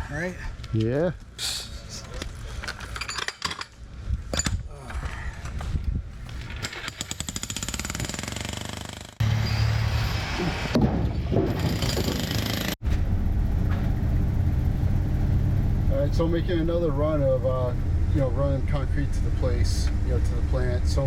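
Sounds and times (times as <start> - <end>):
jackhammer hammering concrete: 6.9 - 9.2, 11.6 - 12.8
low engine hum: 12.8 - 21.0.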